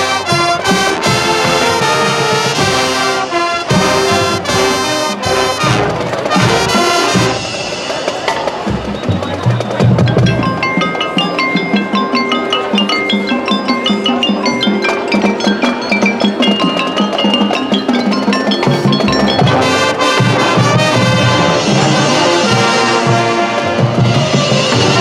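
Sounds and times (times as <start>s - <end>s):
brass chords over drums: 0.0s - 8.9s, 18.6s - 25.0s
mallet percussion ringing notes: 7.4s - 22.6s.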